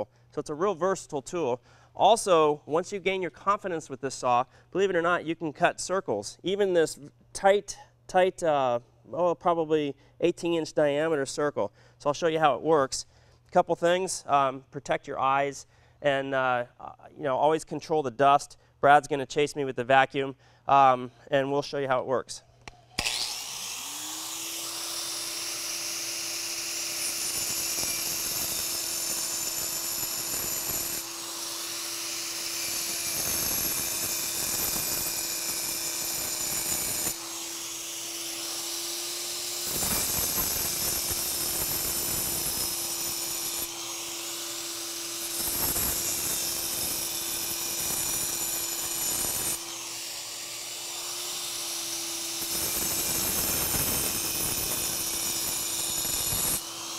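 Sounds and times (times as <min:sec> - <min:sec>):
vacuum running: 0:23.0 - 0:26.9, 0:37.1 - 0:39.7
angle grinder cutting concrete: 0:23.0 - 0:56.9.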